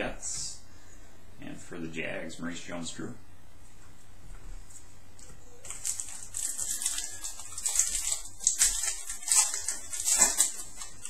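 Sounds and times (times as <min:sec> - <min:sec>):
crinkly card packaging rustling: 0:04.7 - 0:11.0.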